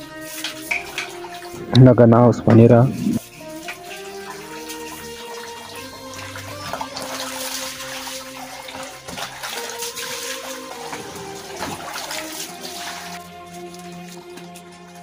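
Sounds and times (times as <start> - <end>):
background music: 0.0 - 15.0
water pouring from a tap: 0.0 - 15.0.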